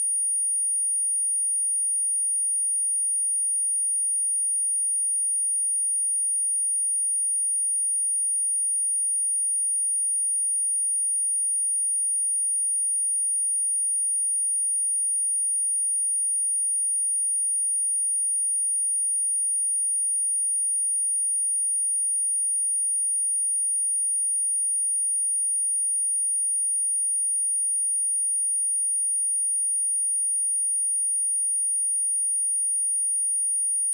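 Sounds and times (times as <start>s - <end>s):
high-pitched sine test tone: 29.9s - 33.9s.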